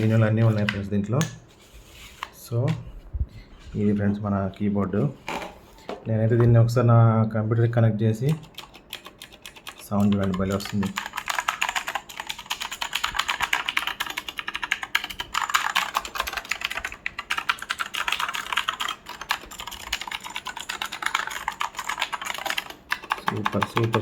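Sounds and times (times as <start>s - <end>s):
mechanical keyboard typing: 8.2s - 24.0s.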